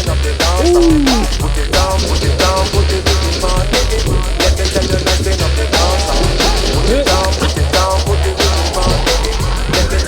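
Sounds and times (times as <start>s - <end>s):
drum and bass music: 0.0s - 10.0s.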